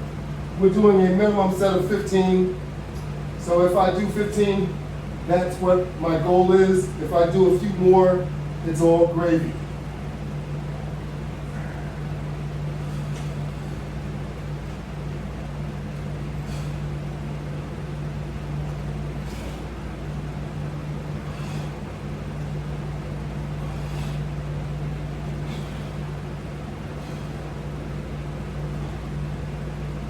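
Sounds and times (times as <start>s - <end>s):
low electrical hum: 0.0s - 30.0s.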